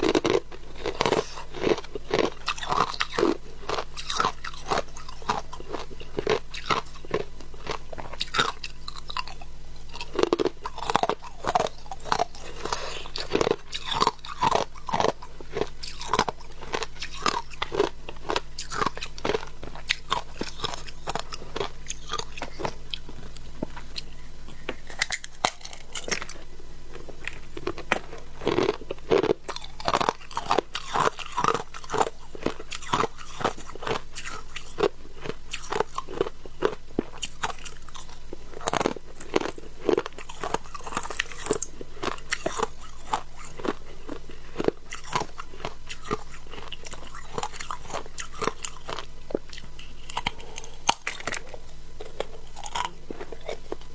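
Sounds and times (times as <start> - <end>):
ice crunching while chewed: 0.0 - 53.9.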